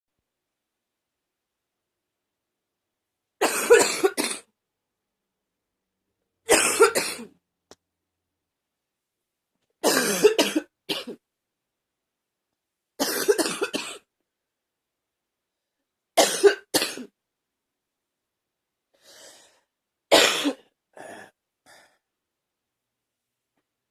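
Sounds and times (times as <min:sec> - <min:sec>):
person coughing hard: 0:03.4 - 0:04.5, 0:06.5 - 0:07.3, 0:09.8 - 0:11.2, 0:13.0 - 0:14.1, 0:16.2 - 0:17.1, 0:20.1 - 0:21.4.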